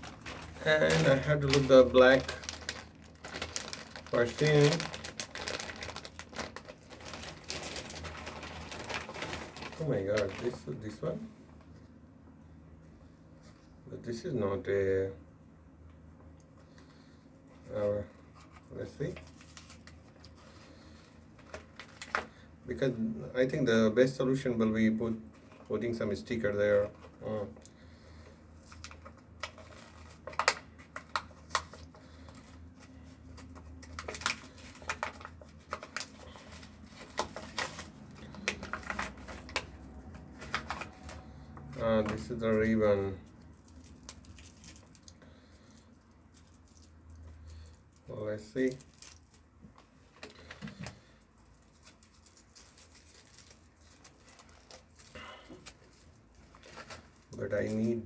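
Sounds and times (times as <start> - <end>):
materials handled by hand: 0.0 - 11.9, 26.7 - 58.0.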